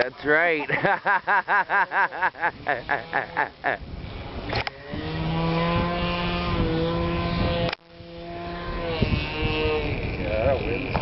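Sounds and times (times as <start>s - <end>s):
model airplane engine running: 4.2s - 11.0s.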